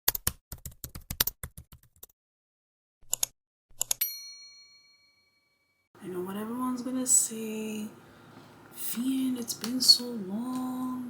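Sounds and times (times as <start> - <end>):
bell-like ding: 4.0 - 5.8.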